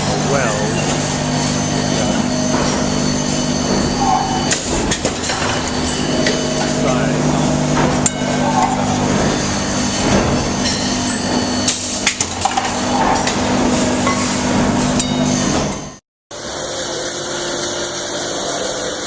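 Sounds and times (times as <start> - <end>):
machinery humming: 0.0 - 19.0
metallic clanks and knocks: 0.6 - 15.8.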